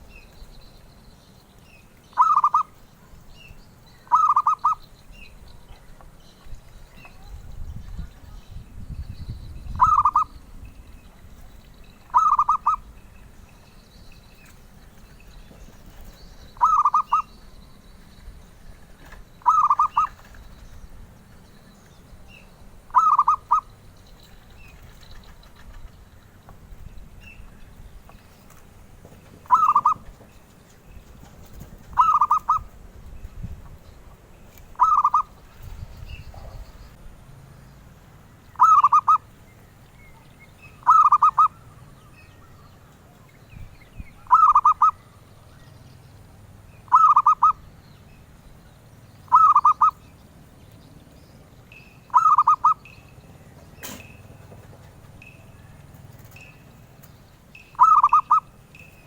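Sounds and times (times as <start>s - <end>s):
dove cooing: 2.1s - 3.1s, 4.0s - 4.9s, 9.7s - 10.4s, 12.1s - 13.0s, 15.9s - 17.4s, 19.0s - 20.8s, 22.8s - 23.8s, 29.4s - 30.3s, 31.1s - 32.8s, 34.7s - 37.0s, 38.6s - 39.3s, 40.8s - 43.3s, 44.2s - 45.3s, 46.9s - 47.7s, 49.2s - 50.0s, 52.1s - 53.1s, 57.7s - 58.6s.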